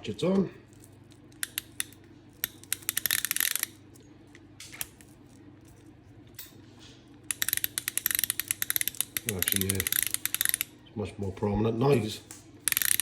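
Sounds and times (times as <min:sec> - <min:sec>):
reel ratchet clicking: 0:01.4 - 0:03.8, 0:07.3 - 0:10.7, 0:12.6 - 0:13.0.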